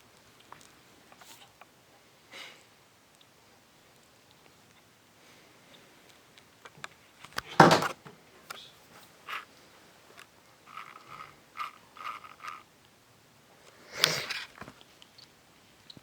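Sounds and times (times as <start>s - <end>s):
short nasal snuffles: 13.9s - 14.4s.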